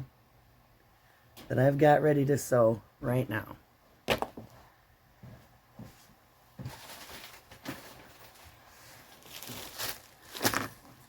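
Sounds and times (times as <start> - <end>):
fabric rustling: 5.2 - 11.0.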